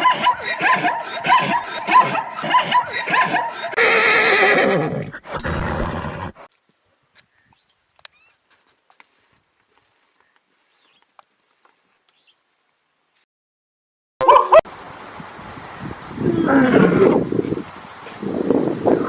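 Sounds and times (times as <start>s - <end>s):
horse whinnying: 3.7s - 6.5s.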